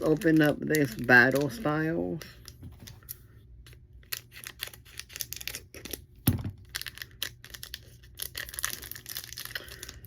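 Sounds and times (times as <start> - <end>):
foil wrapper crackling: 4.1 - 10.0.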